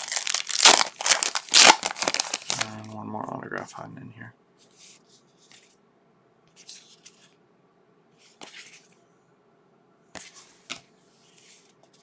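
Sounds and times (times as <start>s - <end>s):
cards rustling: 0.0s - 2.9s.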